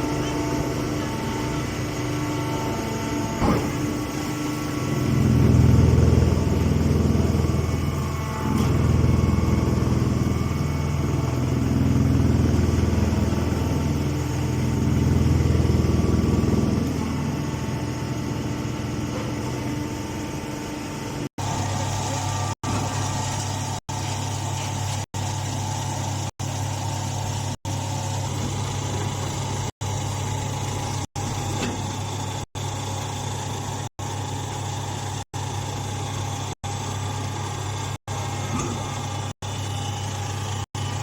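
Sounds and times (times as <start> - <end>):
hay baler machine running: 0.0 - 23.3.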